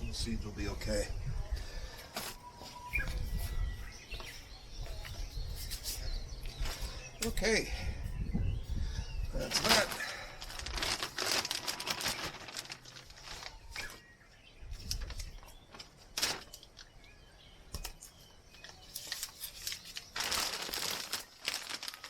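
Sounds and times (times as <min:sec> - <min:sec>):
plastic bag crinkling: 0:09.4 - 0:14.1, 0:14.8 - 0:17.0, 0:18.6 - 0:22.0.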